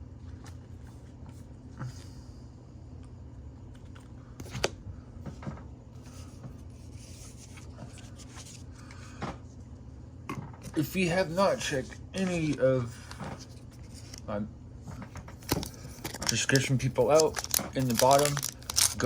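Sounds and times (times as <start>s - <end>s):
steady low hum: 0.0s - 19.0s
trading cards rustling: 11.2s - 14.3s, 15.1s - 19.0s.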